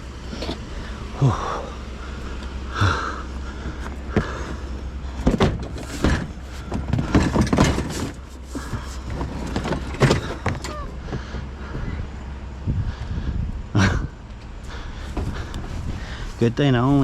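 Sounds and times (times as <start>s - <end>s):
low steady hum: 0.0s - 17.0s
car parts knocking and clattering: 2.1s - 12.0s, 13.8s - 17.0s.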